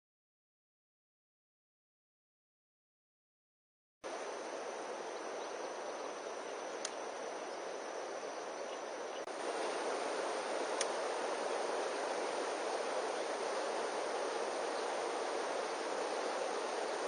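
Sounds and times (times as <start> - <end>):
outdoor background rush: 4.0 - 17.0
faint clicks: 6.8 - 7.0, 10.6 - 11.0.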